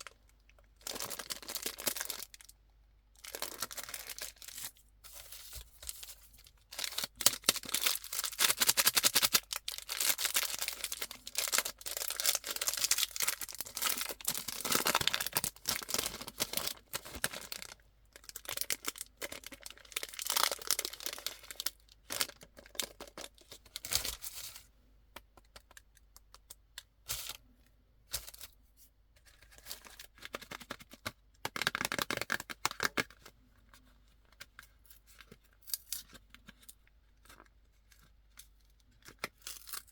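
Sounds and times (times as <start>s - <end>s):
wrappers tearing and crinkling: 0.8s - 2.5s, 6.7s - 24.4s.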